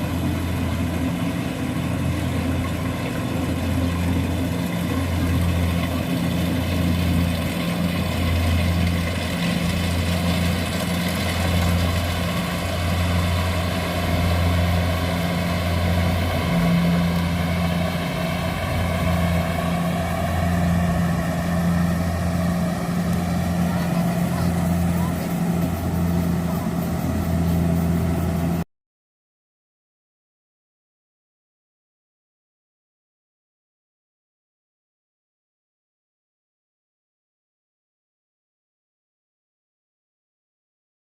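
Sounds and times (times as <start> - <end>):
combine harvester diesel engine: 0.0 - 28.6.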